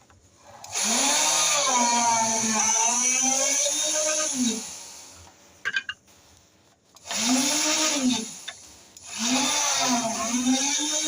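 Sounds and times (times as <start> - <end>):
electric drill motor spinning: 0.6 - 5.1, 7.0 - 11.0.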